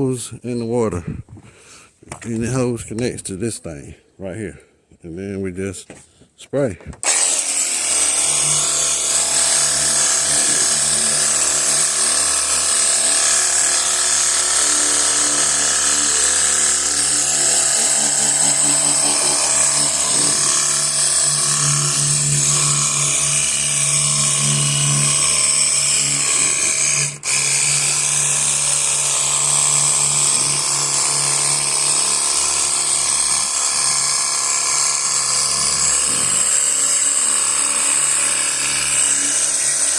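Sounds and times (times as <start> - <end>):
pressure washer motor whining: 7.0 - 39.6.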